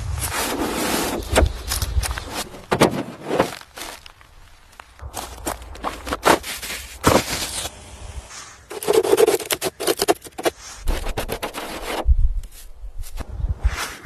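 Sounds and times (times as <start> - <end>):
scraping and rubbing strokes: 5.3 - 14.0.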